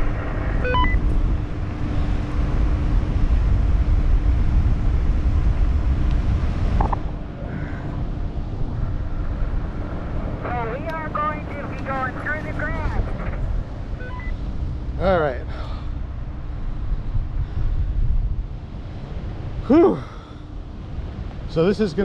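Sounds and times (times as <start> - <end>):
wind buffeting microphone: 0.0 - 10.4, 16.0 - 19.7.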